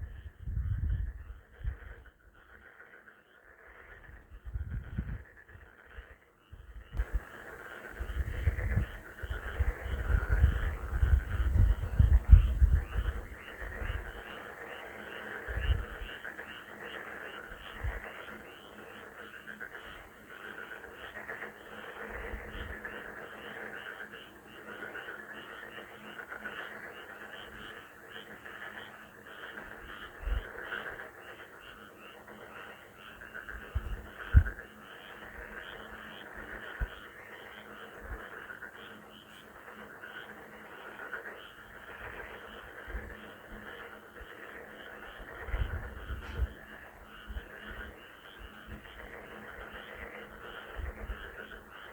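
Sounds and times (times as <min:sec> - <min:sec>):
dense frog croaking: 0:00.0 - 0:51.9
frogs calling: 0:00.0 - 0:51.9
brief low thumps: 0:45.7 - 0:46.6.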